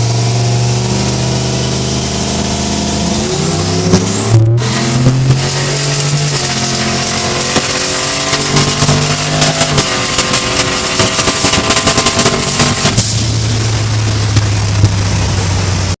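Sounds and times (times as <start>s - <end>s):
racing engine running hard: 0.0s - 16.0s
rapid rattle of sharp cracks: 5.8s - 13.2s.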